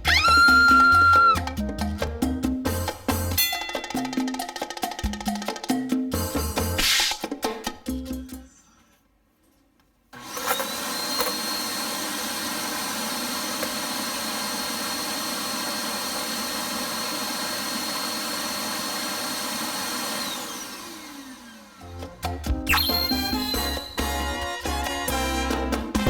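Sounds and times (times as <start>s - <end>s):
vacuum motor whining: 10.2s - 21.8s.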